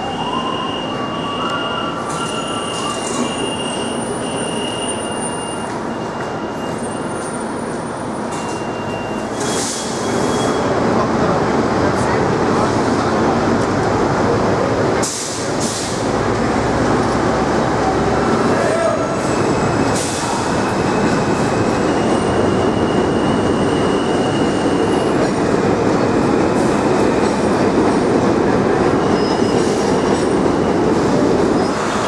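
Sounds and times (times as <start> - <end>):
subway train rumbling on rails: 0.0 - 32.0
faint wheel squeal: 8.4 - 10.7.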